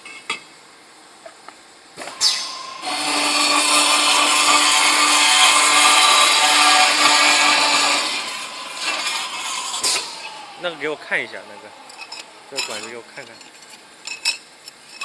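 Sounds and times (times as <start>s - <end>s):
circular saw cutting metal: 2.0s - 13.9s.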